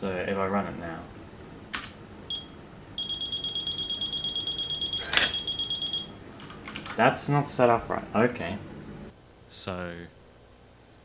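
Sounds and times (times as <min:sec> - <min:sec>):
typewriter buzzer beeping: 0:02.3 - 0:06.1.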